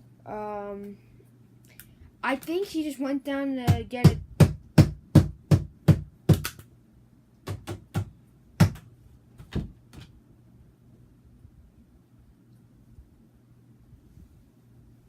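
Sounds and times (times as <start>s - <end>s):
sharp knocks: 3.7s - 6.6s, 7.5s - 10.1s.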